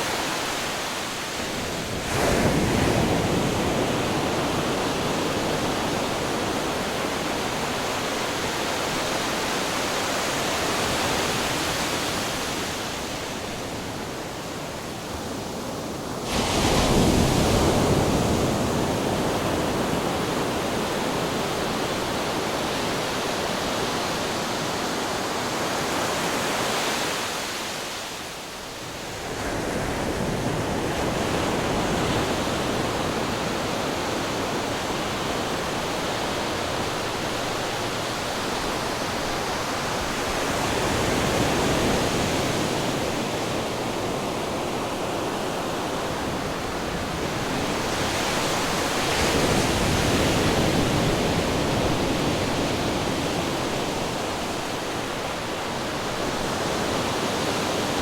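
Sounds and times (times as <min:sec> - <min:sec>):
ocean waves crashing on rocks: 0:29.0 - 0:58.0.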